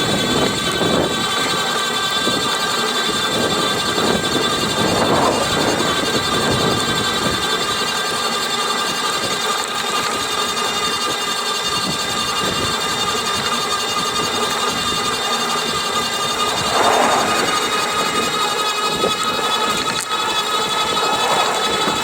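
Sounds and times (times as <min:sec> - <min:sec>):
rattling noise: 0:15.4 - 0:22.0.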